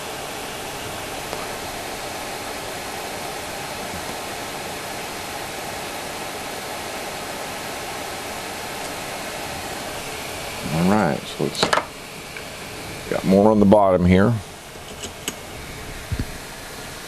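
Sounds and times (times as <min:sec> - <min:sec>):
hot air blower hissing: 0:00.0 - 0:17.0.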